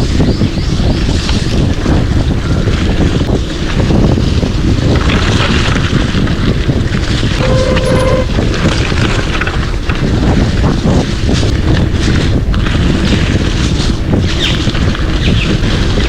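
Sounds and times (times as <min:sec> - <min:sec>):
wind buffeting microphone: 0:00.0 - 0:16.0
short steady tone: 0:07.4 - 0:08.4.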